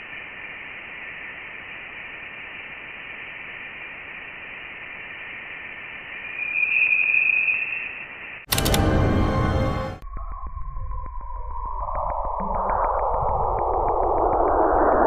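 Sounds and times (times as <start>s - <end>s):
thin hiss: 0.0s - 8.6s
whistling tone: 6.2s - 8.2s.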